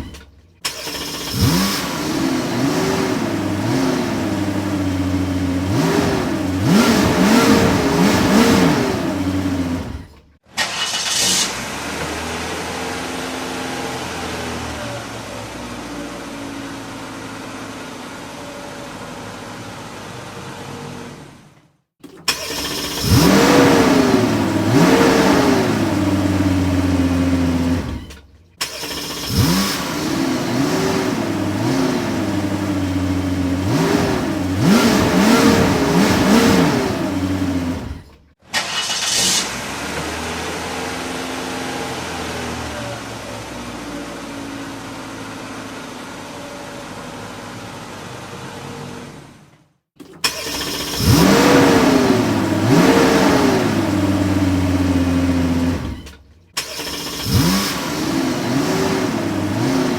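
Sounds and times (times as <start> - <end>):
car engine revving: 0.0 - 21.4, 22.2 - 49.4, 50.2 - 59.9
car engine running steadily: 0.0 - 38.3, 39.6 - 59.9.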